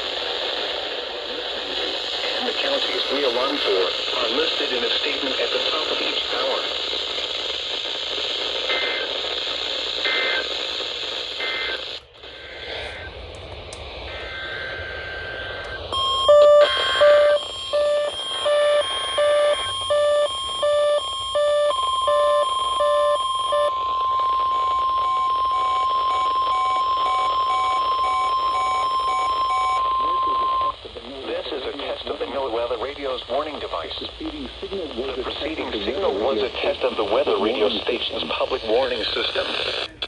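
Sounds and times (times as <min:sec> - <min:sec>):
radio static hiss: 0:00.0 - 0:40.0
steady warning alarm tone: 0:14.0 - 0:30.8
two-pitch beeping alarm: 0:14.1 - 0:30.7.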